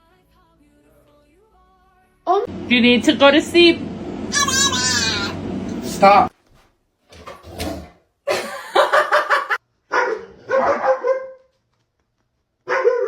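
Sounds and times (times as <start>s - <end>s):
dog barking: 9.9s - 11.5s, 12.6s - 13.0s.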